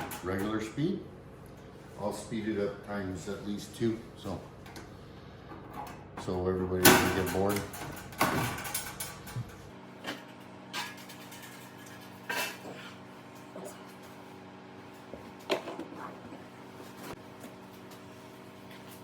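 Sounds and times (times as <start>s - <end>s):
steady low hum: 0.0s - 10.0s
metal parts and tools clanking: 6.8s - 9.6s.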